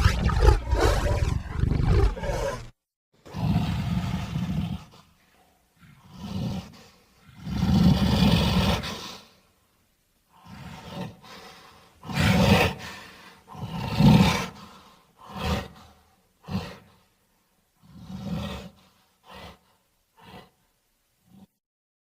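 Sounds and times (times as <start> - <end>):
cartoon dinosaur roaring and growling: 0.0 - 2.7
dinosaur grunts: 0.0 - 2.7.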